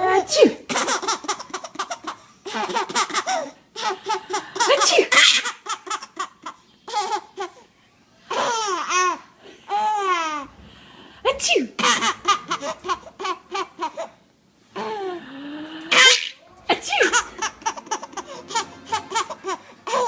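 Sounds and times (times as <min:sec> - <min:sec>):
baby laughing: 0:00.6 - 0:07.6, 0:08.3 - 0:10.5, 0:11.7 - 0:14.2, 0:15.9 - 0:20.0.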